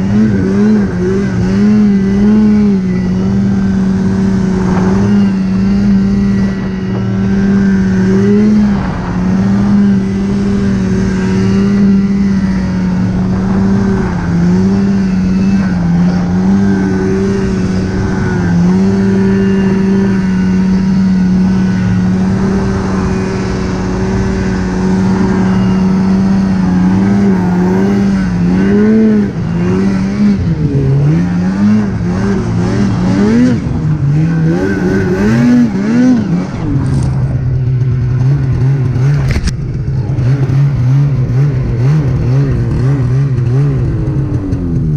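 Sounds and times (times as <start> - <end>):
snowmobile engine revving: 0.0 - 44.9.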